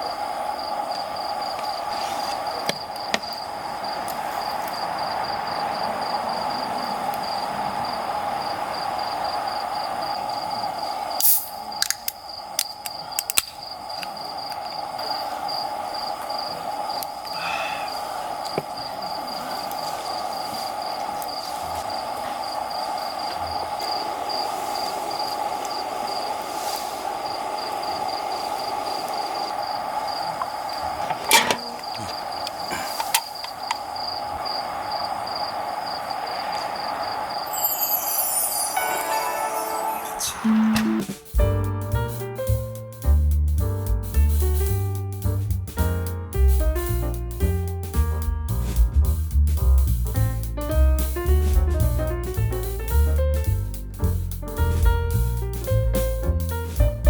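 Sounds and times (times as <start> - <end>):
insect drone: 0.0 - 41.4
crickets chirping: 0.0 - 57.0.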